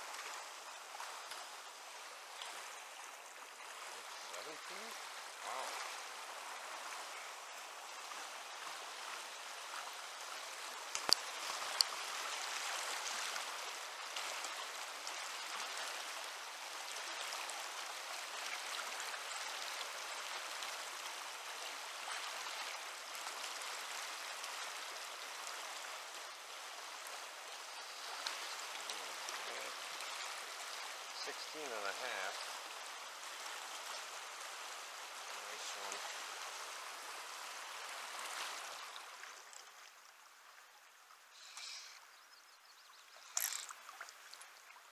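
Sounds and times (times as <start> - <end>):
flowing river water: 0.0 - 44.9.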